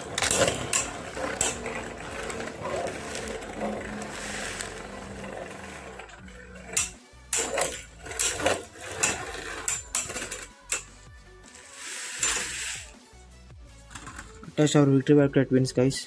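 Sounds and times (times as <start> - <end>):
rattling spin of a top: 0.0 - 13.0
spinning tops clashing: 0.0 - 13.0.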